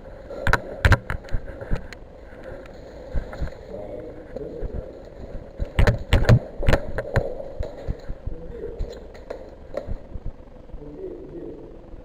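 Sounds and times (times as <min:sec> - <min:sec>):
sharp knocks or clicks: 0:00.5 - 0:01.4, 0:05.6 - 0:08.1.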